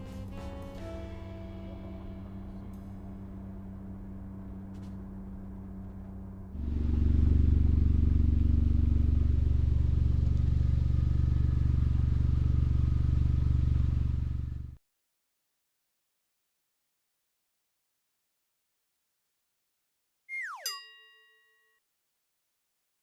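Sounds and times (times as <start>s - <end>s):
road noise: 0.0s - 14.8s
vehicle engine running: 0.0s - 14.8s.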